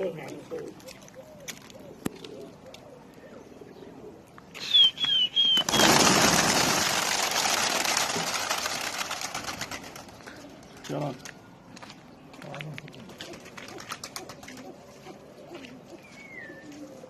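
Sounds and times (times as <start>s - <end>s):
pigeons cooing: 0.0s - 10.9s, 12.5s - 17.0s
wings flapping: 4.6s - 10.9s, 13.1s - 14.8s.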